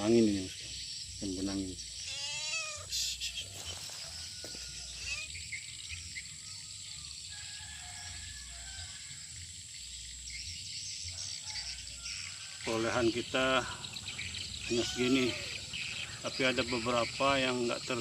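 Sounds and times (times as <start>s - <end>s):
high-pitched insect buzzing: 0.0s - 7.3s.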